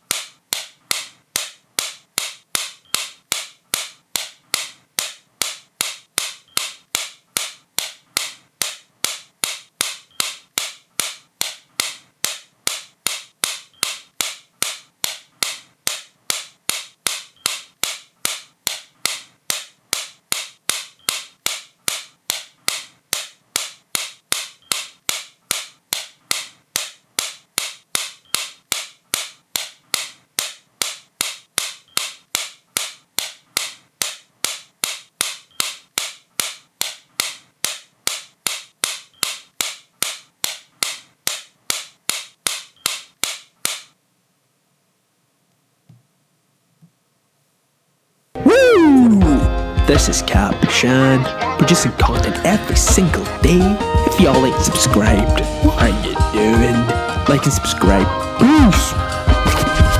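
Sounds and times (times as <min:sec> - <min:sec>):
sharp crisp clicks: 0:00.0 - 0:44.0.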